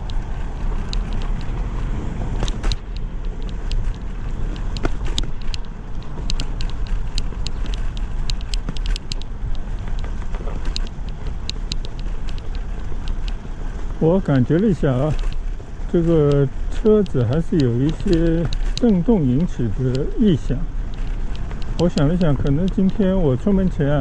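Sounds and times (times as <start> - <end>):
bicycle frame rattling: 0.0 - 24.0
road and wind rumble: 0.0 - 24.0
rider talking: 10.0 - 10.9, 13.9 - 20.8, 21.5 - 24.0.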